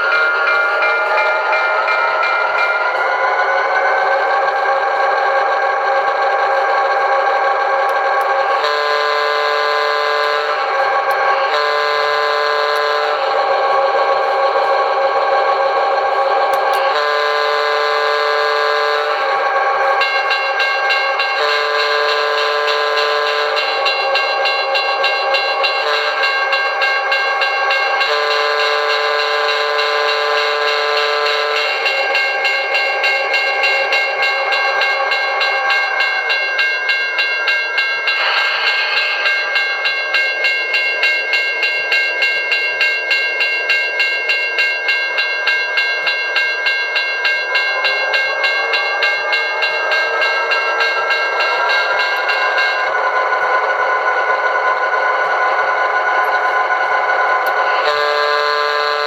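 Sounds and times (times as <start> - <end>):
chord of steady tones: 0.0 - 59.0
model train diesel engine running: 0.0 - 59.0
rhythmic rail clatter: 0.0 - 59.0
train horn chime: 7.9 - 14.7, 16.6 - 53.5, 57.4 - 59.0.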